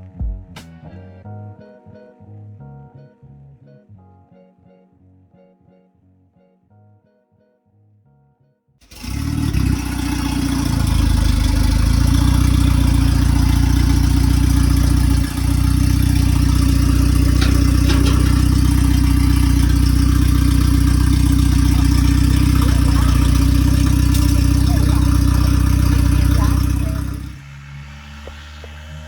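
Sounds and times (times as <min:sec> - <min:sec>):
car engine idling: 0:08.8 - 0:27.5.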